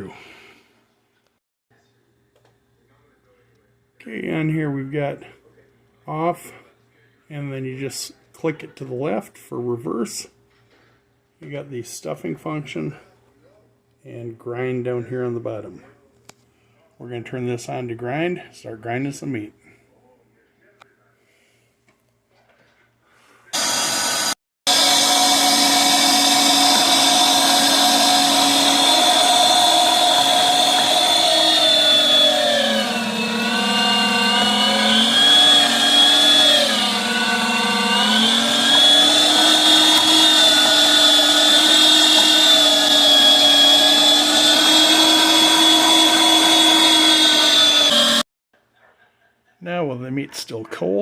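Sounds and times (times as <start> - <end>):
electric meat grinder motor whining: 23.6 - 48.2.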